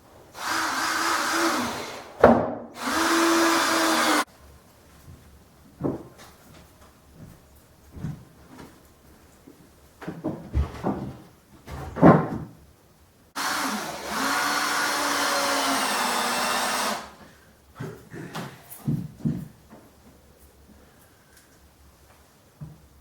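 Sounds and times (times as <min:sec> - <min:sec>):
electric tool motor running: 0:00.4 - 0:02.1, 0:02.8 - 0:04.2, 0:13.4 - 0:17.2
knocks and handling noises: 0:04.9 - 0:12.7, 0:17.8 - 0:20.5.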